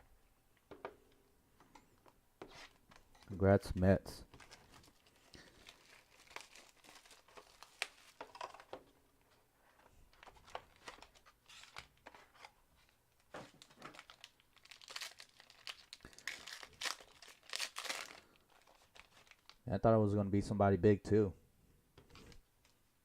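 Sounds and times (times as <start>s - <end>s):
wrappers crinkling and tearing: 4.4s - 8.6s, 13.5s - 19.7s.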